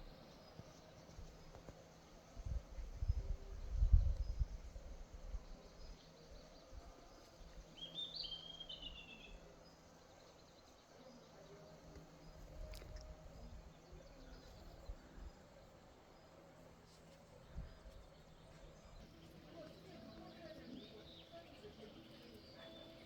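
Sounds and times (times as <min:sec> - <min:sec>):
songbird chirping: 0:00.0 - 0:23.0
wind rumble on microphone: 0:02.3 - 0:06.0.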